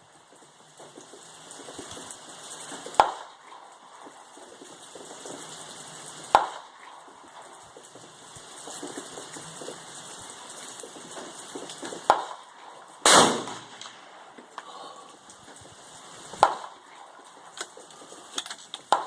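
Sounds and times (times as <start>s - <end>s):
rifle shot: 3.0s - 3.4s, 6.3s - 6.8s, 12.1s - 14.4s, 16.4s - 16.9s
sharp short cracks: 11.7s - 14.7s.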